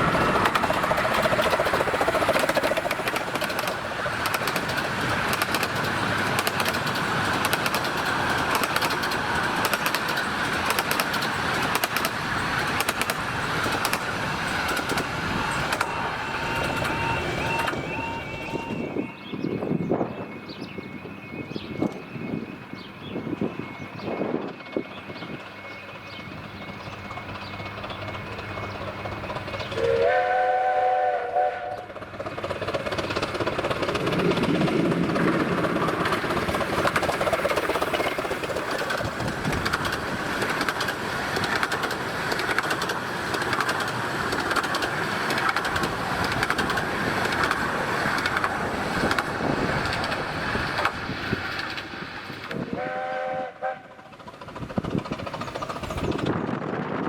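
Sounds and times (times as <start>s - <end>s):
train running noise: 0.0s - 57.0s
steam locomotive chime whistle: 15.3s - 26.9s, 29.7s - 32.0s, 52.5s - 54.1s.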